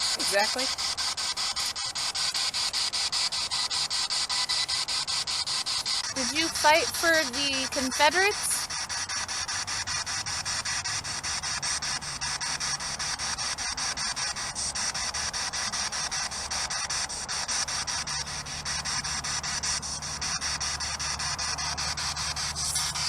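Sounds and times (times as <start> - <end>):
low hum: 0.0 - 23.0
radio static hiss: 0.0 - 23.0
rapid clicks: 0.0 - 23.0.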